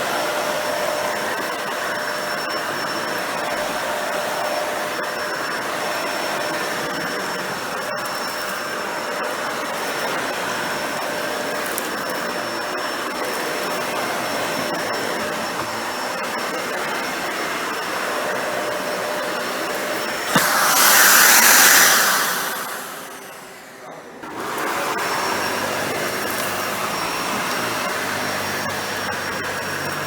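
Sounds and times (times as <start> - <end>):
vacuum cleaner running on rug: 0.0 - 30.0
vacuum cleaner click: 15.6 - 15.9, 20.2 - 23.9.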